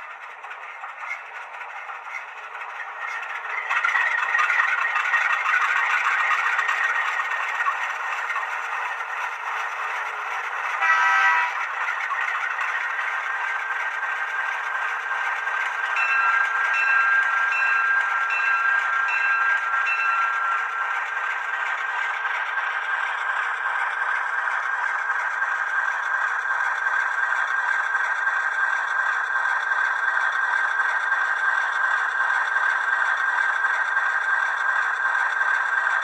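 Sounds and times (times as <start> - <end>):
locomotive engine sound through speaker: 0.0 - 36.0
horn-like toot: 10.8 - 11.6.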